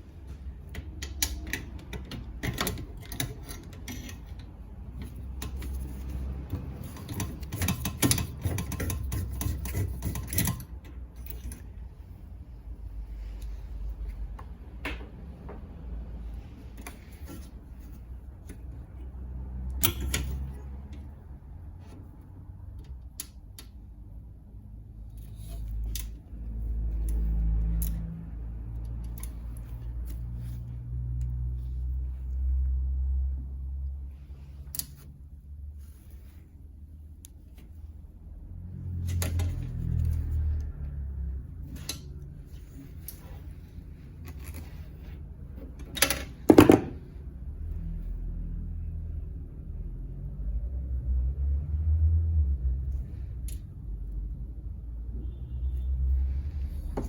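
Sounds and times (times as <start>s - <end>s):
tools clicking and knocking: 0.6s - 11.8s, 19.6s - 21.1s, 45.6s - 47.2s.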